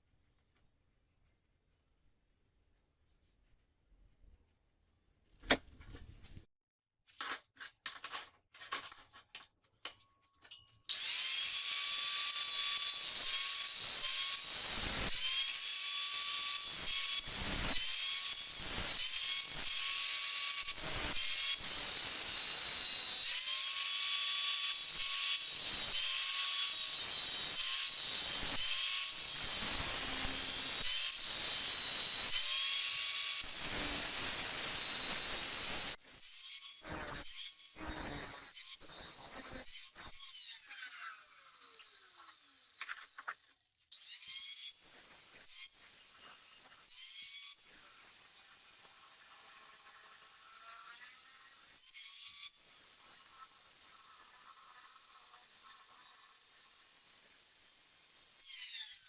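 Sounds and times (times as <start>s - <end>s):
electric power tool whining: 10.9s - 36.0s.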